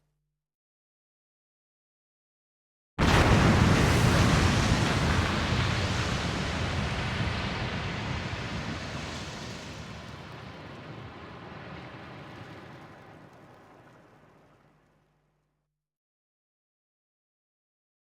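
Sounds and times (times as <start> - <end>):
boom rumble and hiss: 3.0 - 14.1.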